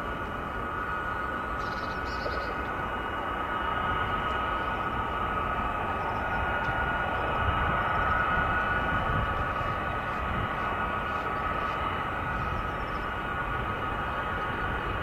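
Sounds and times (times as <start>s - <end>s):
jet engines whining: 0.0s - 15.0s.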